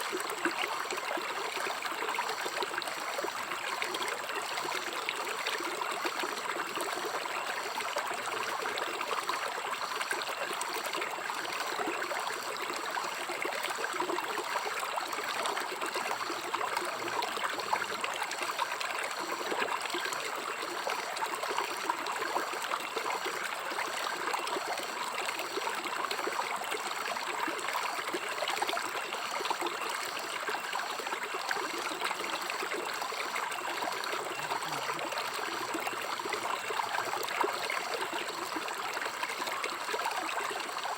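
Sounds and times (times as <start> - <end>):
river water flowing over rocks: 0.0 - 40.9.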